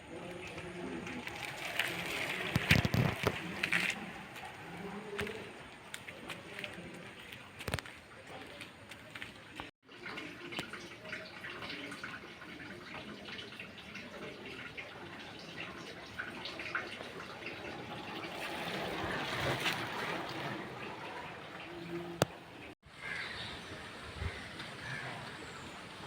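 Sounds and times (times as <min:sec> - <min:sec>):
bicycle tyres on road: 0:00.0 - 0:07.9, 0:17.0 - 0:23.2.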